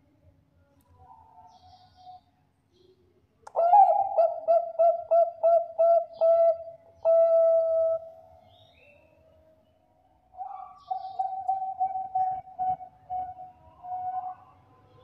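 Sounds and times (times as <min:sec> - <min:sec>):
dove cooing: 0:03.6 - 0:08.2, 0:10.4 - 0:15.0.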